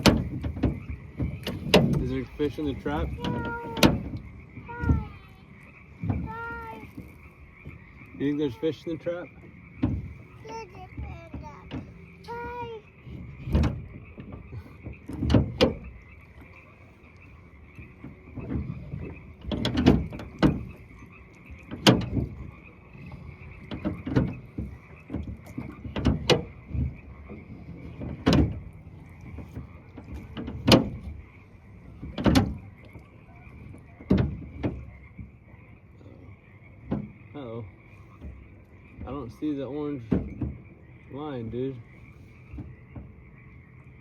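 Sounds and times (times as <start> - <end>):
loud sharp knocks and thumps: 0.0 - 5.2, 9.7 - 16.5, 18.0 - 20.8, 21.6 - 22.6, 23.6 - 31.3, 32.0 - 32.9, 34.0 - 35.4, 36.8 - 37.2, 40.0 - 40.7
frog chorus calling: 0.0 - 44.0.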